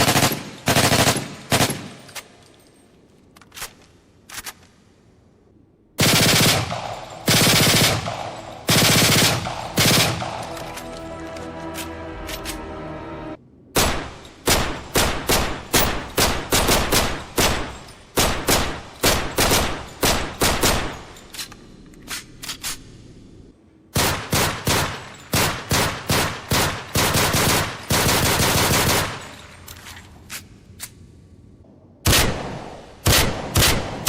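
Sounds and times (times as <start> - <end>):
automatic gunfire bursts: 0.0 - 1.9, 6.0 - 10.4, 13.8 - 21.0, 24.0 - 29.2, 32.1 - 34.0
single gunshots: 13.8 - 21.1, 32.0 - 34.0.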